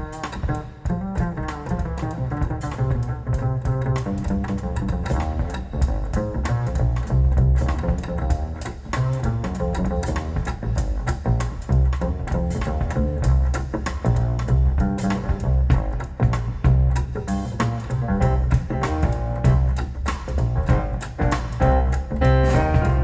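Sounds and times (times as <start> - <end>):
deep bass line: 0.0 - 23.0
plucked notes: 20.7 - 23.0.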